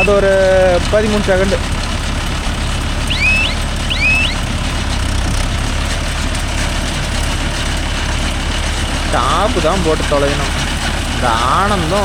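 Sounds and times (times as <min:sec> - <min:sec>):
tractor diesel engine running: 0:00.0 - 0:12.0
short high chirps: 0:03.1 - 0:04.5.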